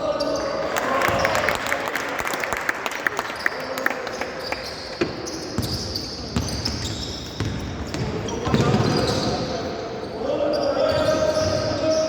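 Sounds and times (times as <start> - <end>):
sneaker squeaks: 3.4 - 12.0
basketball bouncing on court: 5.0 - 9.4.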